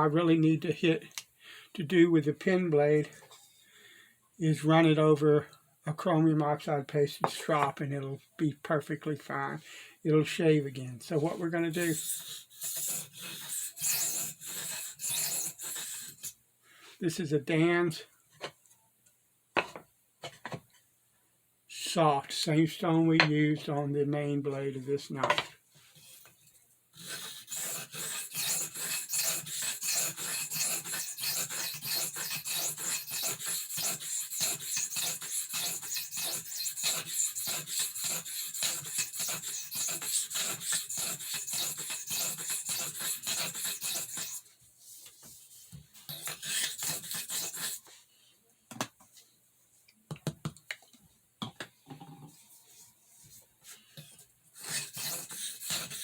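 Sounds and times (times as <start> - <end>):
knife stroking on whetstone: 27.0 - 44.4, 45.0 - 48.0, 53.6 - 56.0.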